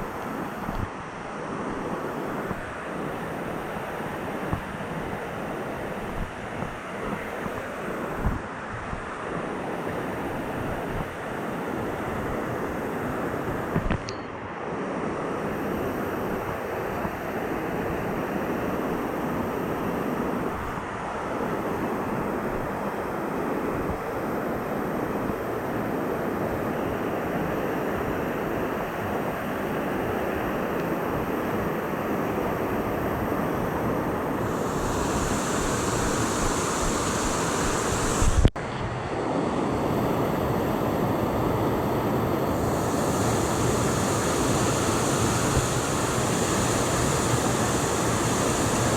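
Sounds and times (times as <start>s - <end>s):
waterfall rushing: 34.5s - 38.4s, 42.6s - 48.9s.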